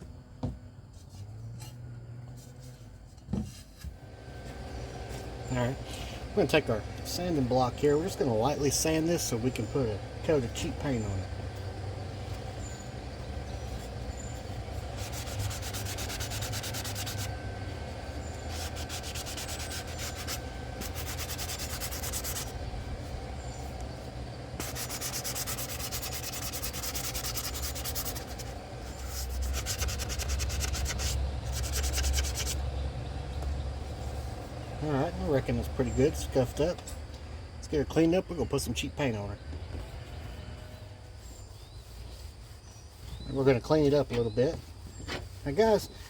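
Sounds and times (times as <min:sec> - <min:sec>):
sanding block rubbing on wood: 0:06.5 - 0:32.7, 0:41.1 - 0:46.0.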